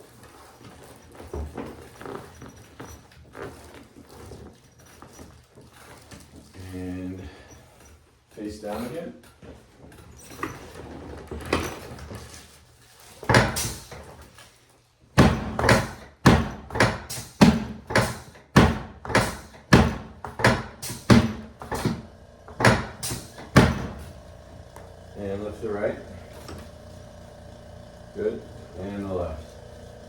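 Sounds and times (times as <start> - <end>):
thumps: 15.2 - 25.1.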